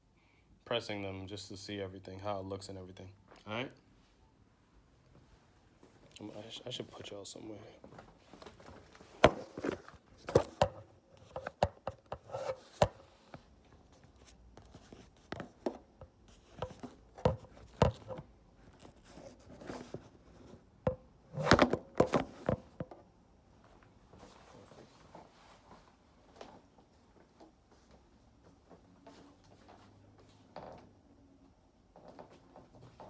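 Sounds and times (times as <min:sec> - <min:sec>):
objects knocking on hard surface: 0:09.0 - 0:13.0, 0:15.4 - 0:18.2.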